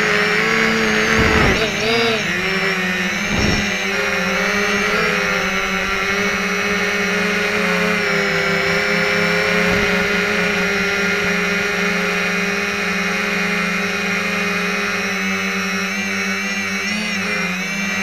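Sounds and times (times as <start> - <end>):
drone motors and propellers whining: 0.0 - 18.0.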